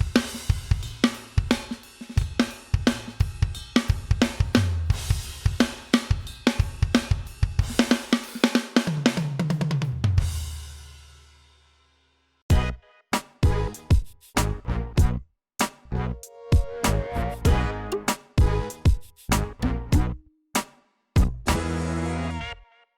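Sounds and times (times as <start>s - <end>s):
drum kit groove: 0.0s - 11.6s, 12.5s - 21.6s.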